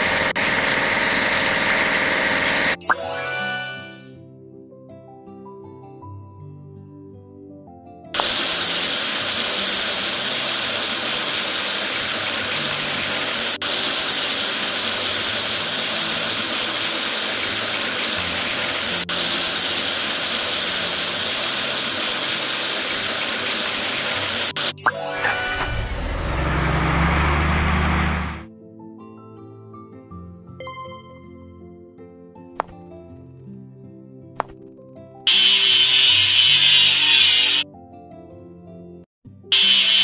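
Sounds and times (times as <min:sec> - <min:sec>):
rushing hiss of spraying water: 0:00.0 - 0:02.8, 0:08.2 - 0:24.8, 0:35.3 - 0:37.6, 0:39.5 - 0:40.0
faint background music: 0:28.5 - 0:35.2, 0:37.7 - 0:39.5.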